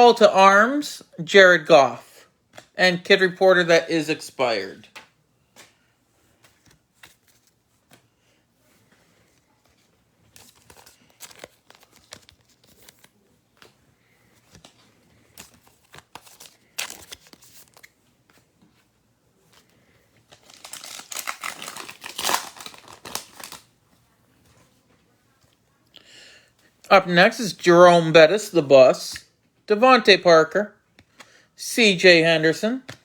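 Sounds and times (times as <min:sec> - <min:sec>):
wrapper crinkling: 0:10.3 - 0:13.1, 0:14.5 - 0:17.9, 0:20.2 - 0:23.7.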